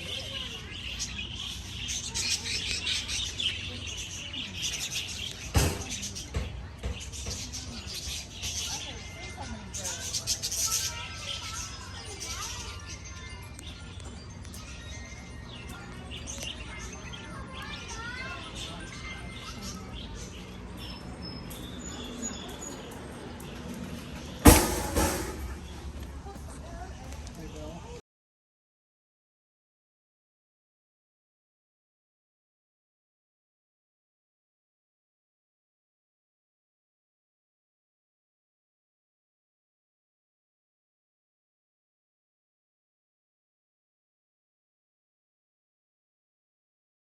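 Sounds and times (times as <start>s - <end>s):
budgies chirping: 0.0s - 25.9s
budgerigars chattering: 0.1s - 13.0s
sharp knock: 5.6s - 6.0s, 24.4s - 25.7s
loud thump and rustle: 24.4s - 25.6s.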